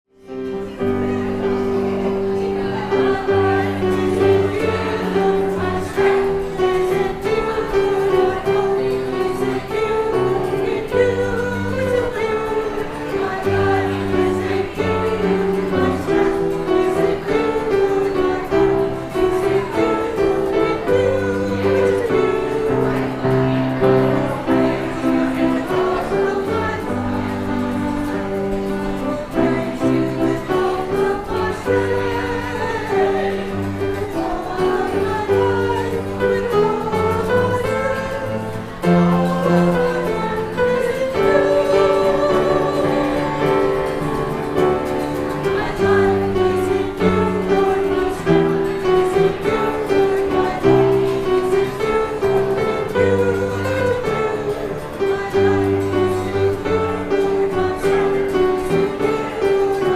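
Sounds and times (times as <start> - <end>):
church choir singing: 0.2 - 59.9
instrumental accompaniment: 0.2 - 59.9.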